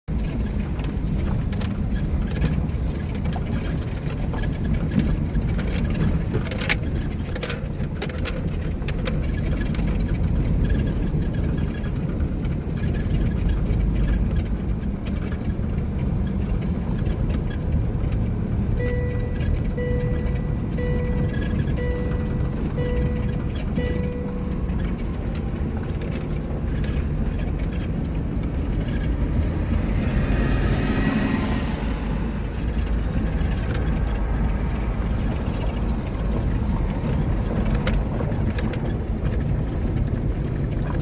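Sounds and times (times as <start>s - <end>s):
heavy truck engine rumble: 0.1s - 41.0s
repeating beep tone: 18.8s - 24.8s.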